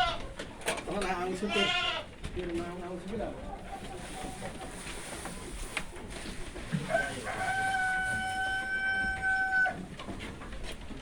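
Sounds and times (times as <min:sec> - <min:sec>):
rooster crowing: 0:06.8 - 0:09.9.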